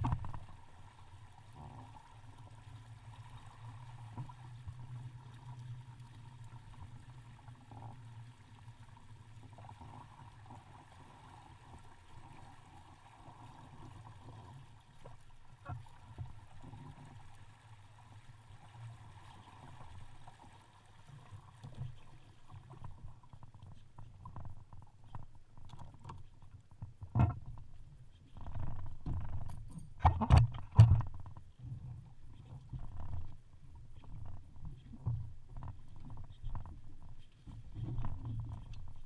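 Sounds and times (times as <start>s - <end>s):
water lapping against boat hull: 0.0s - 39.0s
small knocks: 28.4s - 31.4s.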